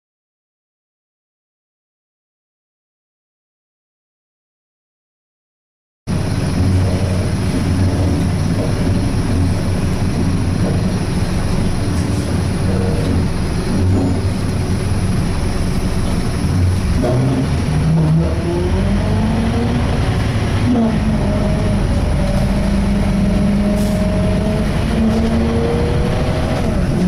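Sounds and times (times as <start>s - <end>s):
bus engine droning: 6.1s - 27.0s
loud groaning: 6.2s - 27.0s.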